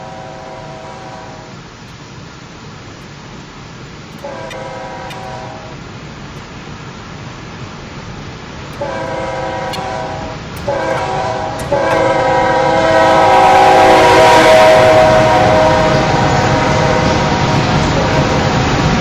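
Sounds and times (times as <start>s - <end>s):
locomotive air horn blasts: 0.0s - 1.6s, 4.1s - 5.8s, 8.7s - 18.6s
freight train rumble: 0.0s - 19.0s.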